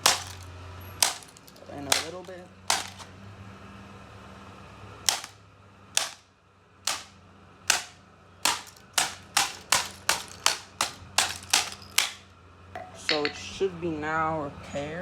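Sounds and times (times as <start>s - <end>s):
hammer striking a laptop: 0.0s - 0.4s, 1.0s - 3.0s, 5.1s - 5.4s, 6.0s - 6.2s, 6.9s - 7.1s, 7.7s - 12.2s.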